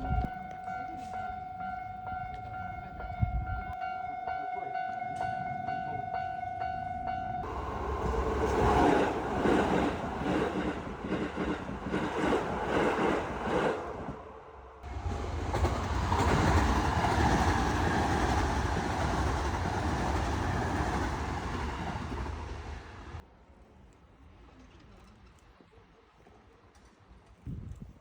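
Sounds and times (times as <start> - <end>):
train rumble: 4.7 - 23.2
train wheels clacking over rails: 7.4 - 13.8, 14.8 - 23.2.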